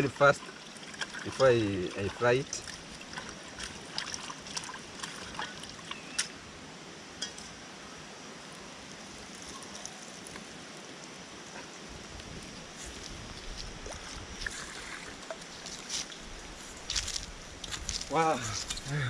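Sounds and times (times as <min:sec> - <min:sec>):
river water rushing: 0:00.0 - 0:11.9.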